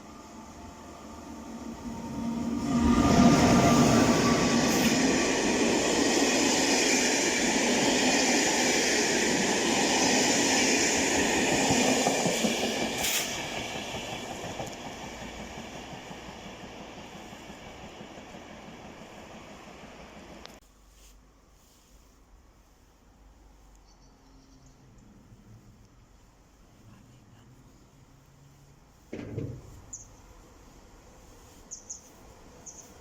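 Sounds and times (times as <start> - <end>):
train passing close by: 0.0 - 20.6.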